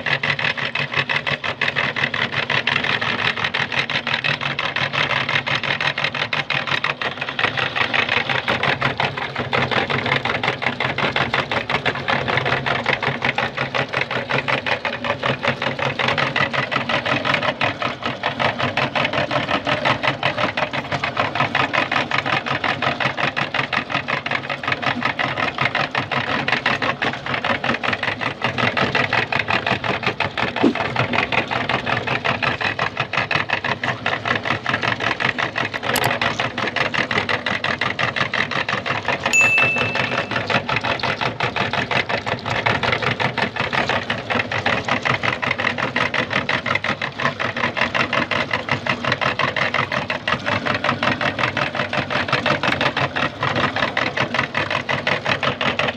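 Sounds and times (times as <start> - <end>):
electric meat grinder running: 0.0 - 39.3, 40.0 - 55.9.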